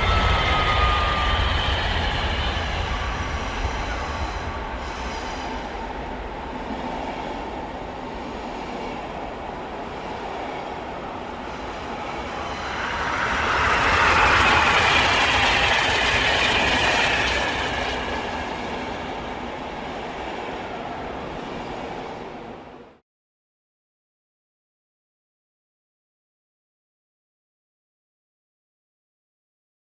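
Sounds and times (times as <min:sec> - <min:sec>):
high squealing rush: 0:00.0 - 0:07.0, 0:09.8 - 0:22.4
train wheels rumbling on track: 0:00.0 - 0:23.0.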